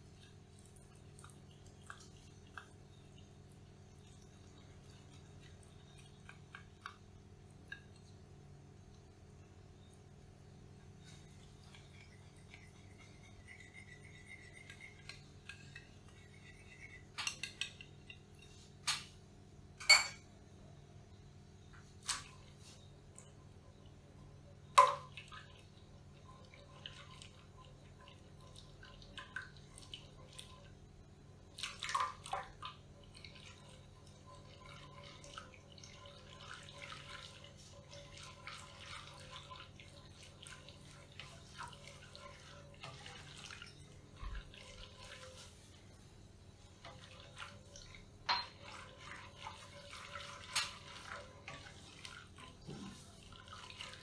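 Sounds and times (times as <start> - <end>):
faint liquid sounds: 0.0 - 54.0
utensils clinking: 19.8 - 20.2.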